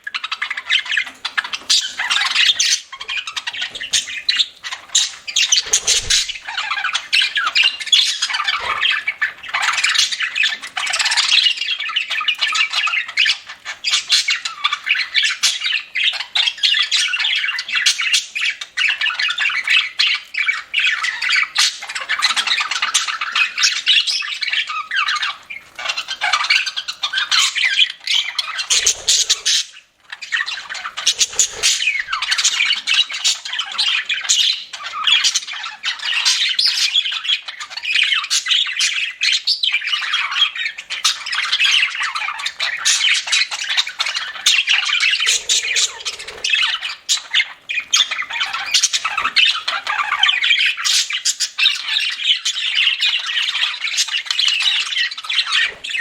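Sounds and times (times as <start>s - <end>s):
budgerigars chattering and squawking: 0.0s - 56.0s.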